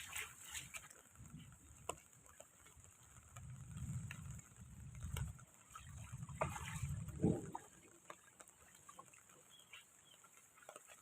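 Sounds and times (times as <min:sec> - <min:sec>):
rain drips and ticks: 0:00.0 - 0:11.0
wind buffeting microphone: 0:02.8 - 0:07.8.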